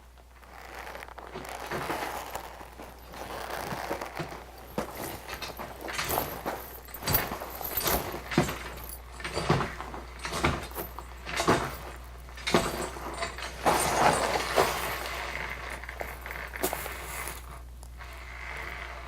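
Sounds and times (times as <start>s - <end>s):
metal clattering and jangling: 1.4s - 17.5s
sharp metallic knocks and clinks: 4.2s - 15.2s.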